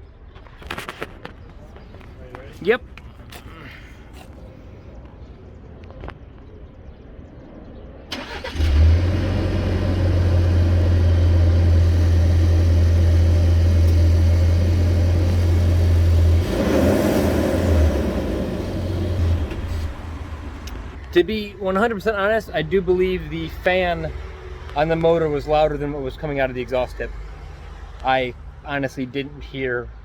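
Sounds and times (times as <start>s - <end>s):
pickup truck engine running: 8.2s - 20.7s
engine cooling fan: 8.6s - 20.8s.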